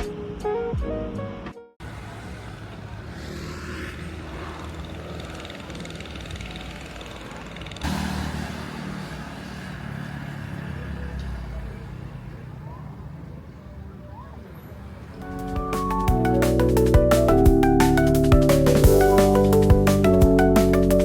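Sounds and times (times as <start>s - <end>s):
outdoor background noise: 1.8s - 17.3s
vehicle engine running: 1.8s - 21.0s.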